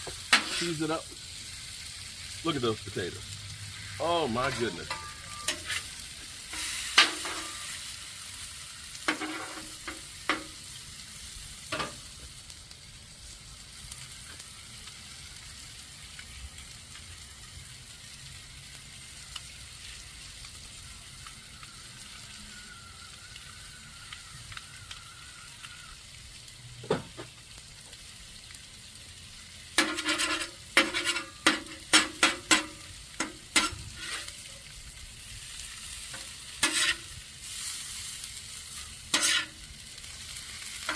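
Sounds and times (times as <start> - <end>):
potatoes sizzling in frying: 0.0 - 40.9
utensil scraping and clacking: 29.8 - 34.3, 36.2 - 37.1, 39.1 - 39.6.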